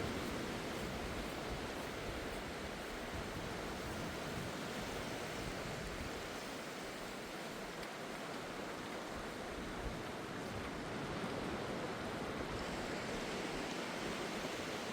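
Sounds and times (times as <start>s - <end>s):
surf washing on sandy beach: 0.0s - 14.9s.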